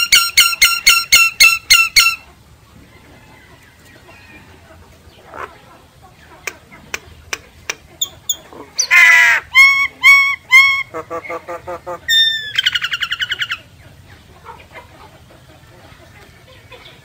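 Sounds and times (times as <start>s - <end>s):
myna calling: 4.1s - 13.8s.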